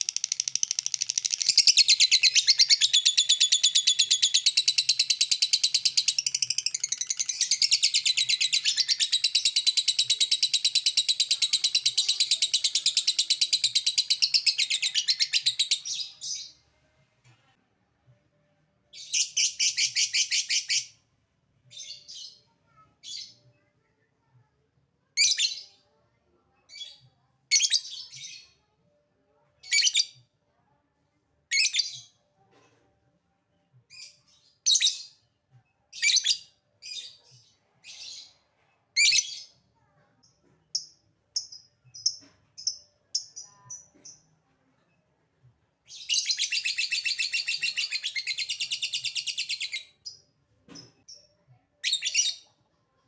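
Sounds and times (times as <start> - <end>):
bird chattering trill: 0.0 - 15.8.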